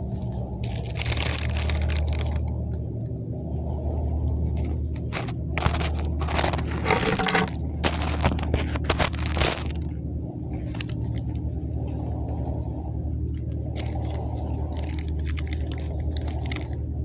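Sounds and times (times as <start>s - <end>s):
steady low rumble: 0.0s - 17.0s
crackling scraping noise: 0.6s - 2.5s, 4.6s - 10.0s, 13.8s - 16.8s.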